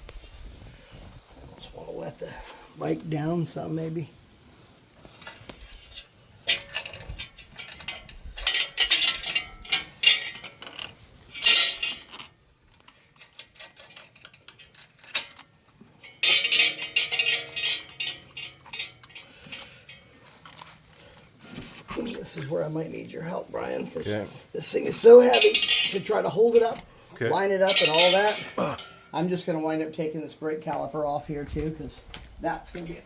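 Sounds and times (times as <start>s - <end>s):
metal parts and tools clinking: 5.0s - 22.0s, 24.9s - 26.9s, 27.6s - 29.0s.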